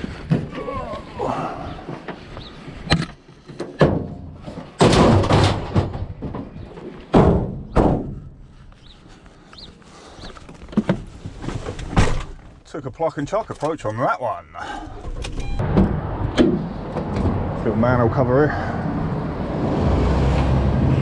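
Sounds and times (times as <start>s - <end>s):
loud metal crashes: 4.8s - 6.3s.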